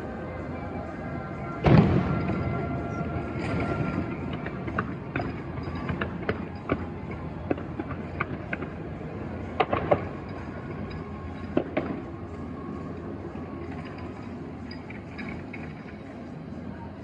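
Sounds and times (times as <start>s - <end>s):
distant fireworks rumble: 1.2s - 13.8s
fireworks pops and cracks: 3.4s - 8.8s, 9.5s - 12.1s.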